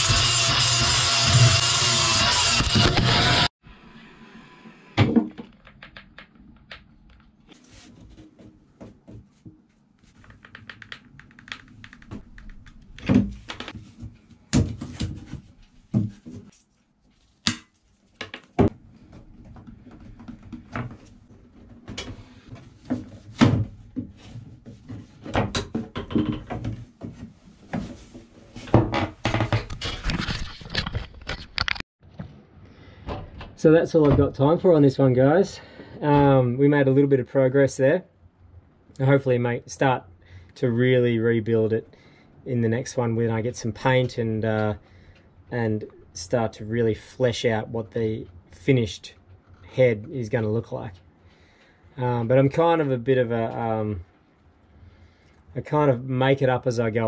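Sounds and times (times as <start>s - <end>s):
thunks and knocks of hand work: 8.0s - 9.7s, 13.0s - 16.5s, 18.2s - 29.8s.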